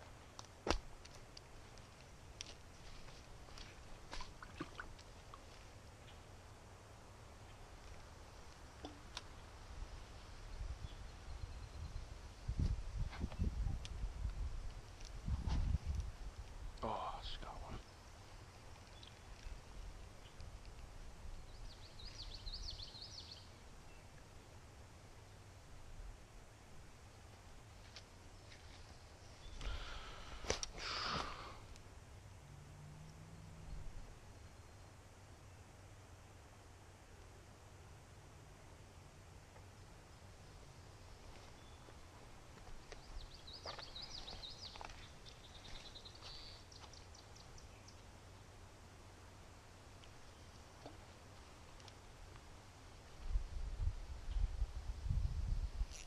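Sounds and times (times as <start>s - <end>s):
songbird singing: 0.0s - 25.6s, 27.0s - 35.8s, 37.0s - 53.1s
low outdoor rumble: 31.2s - 55.4s.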